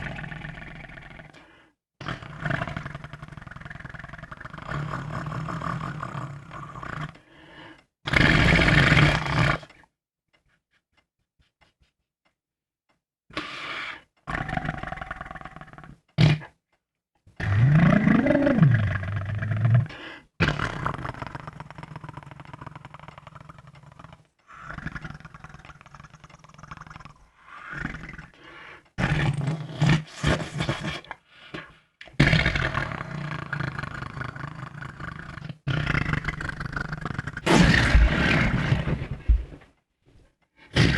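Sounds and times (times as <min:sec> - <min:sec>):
person making fake fart sounds: 0:08.1 - 0:09.7, 0:16.2 - 0:16.5, 0:17.4 - 0:21.5, 0:29.0 - 0:31.1, 0:34.9 - 0:39.6, 0:40.7 - 0:40.9.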